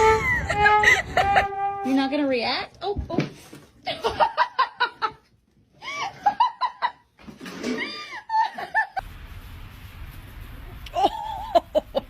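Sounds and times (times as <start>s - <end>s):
person laughing: 0.2s - 1.6s, 10.9s - 12.0s
background hiss: 9.0s - 12.0s.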